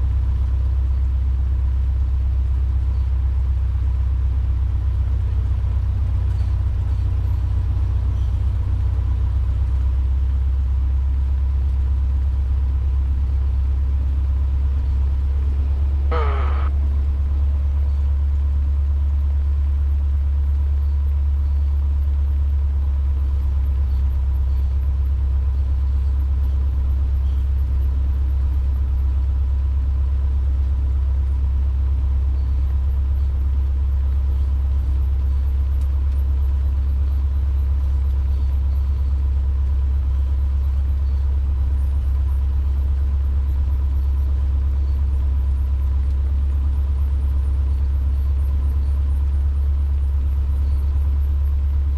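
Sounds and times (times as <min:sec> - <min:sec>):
light aircraft engine droning: 0:00.0 - 0:51.9
faint high tone: 0:16.1 - 0:16.7.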